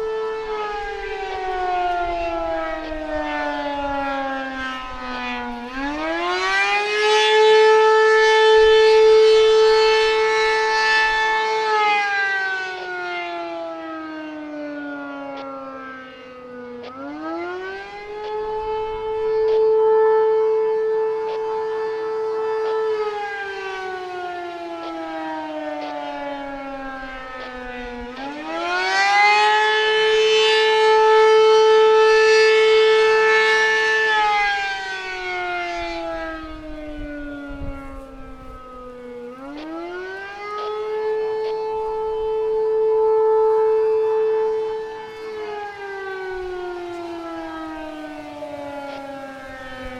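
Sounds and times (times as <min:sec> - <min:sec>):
rotating warning siren wailing: 0:00.0 - 0:49.9.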